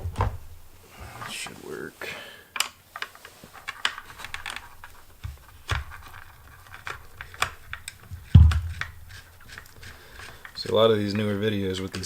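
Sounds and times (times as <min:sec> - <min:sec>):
dull thumps: 0:00.0 - 0:00.8, 0:08.1 - 0:09.3
screwdriver and plastic clicks: 0:02.6 - 0:10.9.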